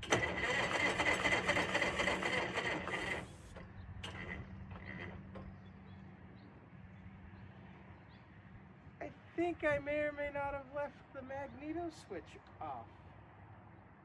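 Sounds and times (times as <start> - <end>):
electric starter cranking an engine: 0.0 - 5.5.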